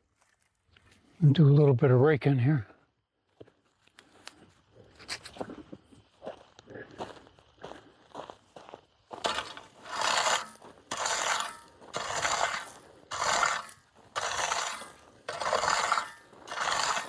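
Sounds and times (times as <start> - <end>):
rake scraping through gravel: 9.1 - 17.0.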